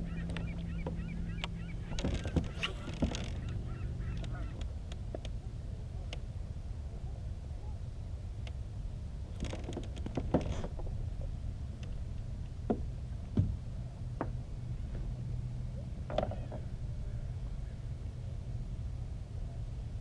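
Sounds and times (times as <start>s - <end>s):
steady low rumble: 0.0s - 20.0s
knocks and clicks of gear: 0.3s - 3.6s.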